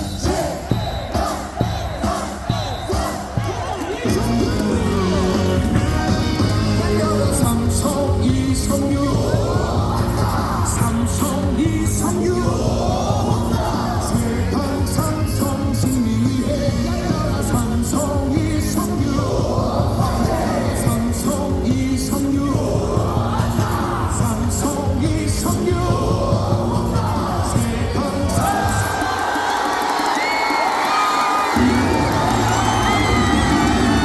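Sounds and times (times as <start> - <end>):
crowd yelling: 0.0 - 8.1, 25.5 - 34.0
loudspeaker music with beat: 0.0 - 29.4
stadium crowd singing: 0.0 - 34.0.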